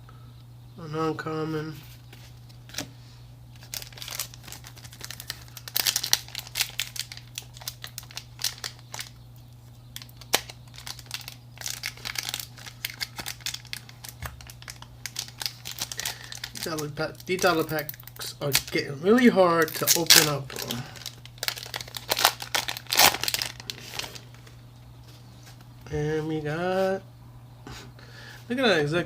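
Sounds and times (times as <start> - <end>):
foil wrapper crinkling and tearing: 3.5 - 24.5.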